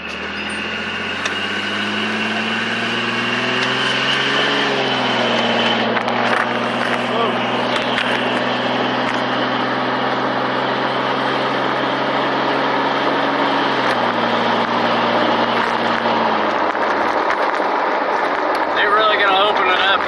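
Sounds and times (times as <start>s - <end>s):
car engine: 0.0s - 20.0s
road noise: 0.0s - 20.0s.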